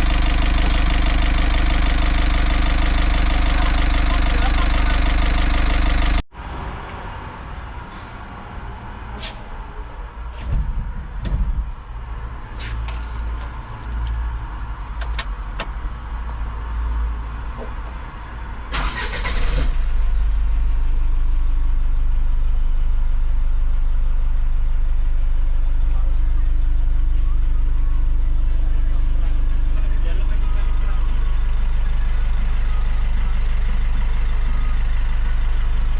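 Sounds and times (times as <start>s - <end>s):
engine clicks and knocks: 0.0s - 6.2s, 10.4s - 11.8s, 15.0s - 15.8s
diesel engine idling: 0.0s - 35.9s.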